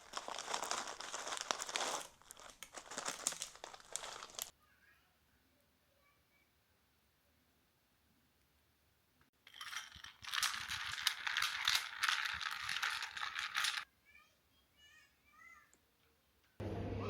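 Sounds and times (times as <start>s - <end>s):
sprinkles rattling in shaker jar: 0.0s - 4.5s, 9.5s - 13.8s.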